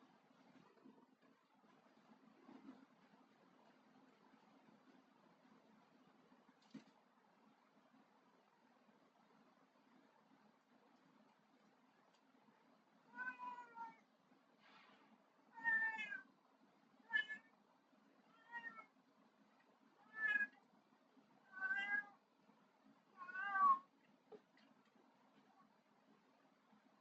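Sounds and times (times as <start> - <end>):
cat meowing: 13.1 - 14.0, 15.6 - 16.3, 17.1 - 17.5, 18.3 - 18.9, 20.0 - 20.6, 21.5 - 22.2, 23.2 - 23.9.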